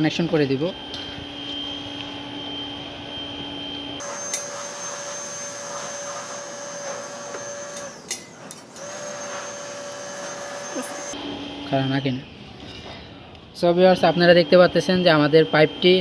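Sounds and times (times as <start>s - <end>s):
electric motor hum with whine: 1.4s - 11.2s
clicks: 4.0s - 11.2s.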